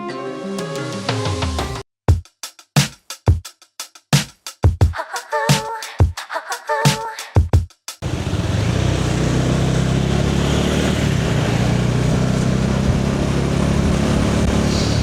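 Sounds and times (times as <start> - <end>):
motorcycle engine cruising: 8.0 - 15.0
wind on microphone: 10.9 - 15.0.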